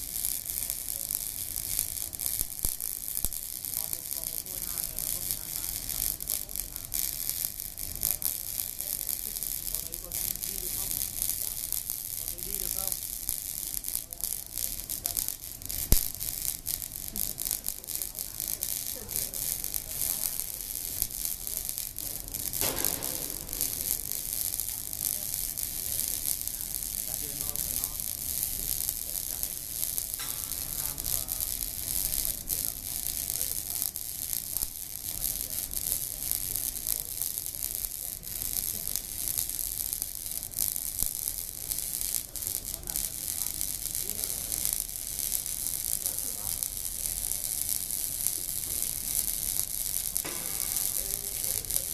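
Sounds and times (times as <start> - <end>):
arc welding crackling sizzle: 0.0 - 51.9
sharp pop: 22.0 - 25.2, 50.2 - 51.9.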